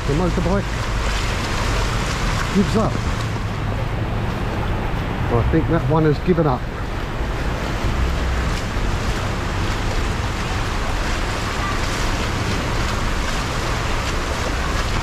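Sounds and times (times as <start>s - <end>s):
traffic: 0.0s - 15.0s
water washing on flooded street: 0.0s - 15.0s
wind rumble on microphone: 0.0s - 15.0s.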